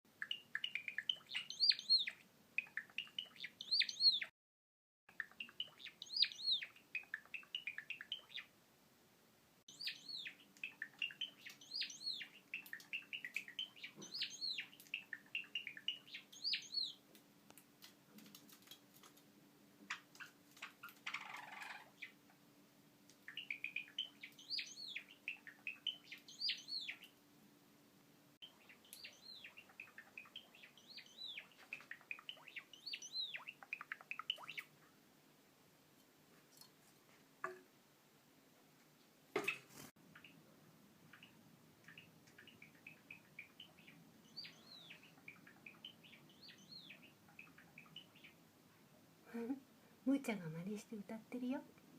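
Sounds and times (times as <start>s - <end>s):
sparrow singing: 0.2s - 4.3s, 5.1s - 8.5s, 9.7s - 17.0s, 23.2s - 27.2s, 28.4s - 34.7s, 41.1s - 48.4s.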